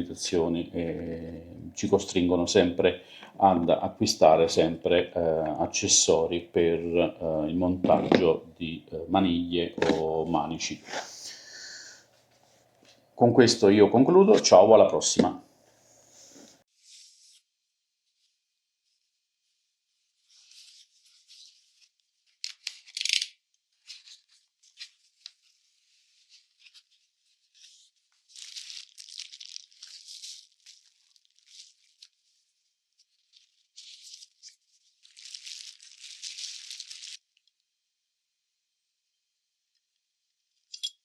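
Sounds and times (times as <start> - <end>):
rustling and rattling handling noise: 7.8 - 8.4, 9.7 - 10.2, 35.0 - 37.2.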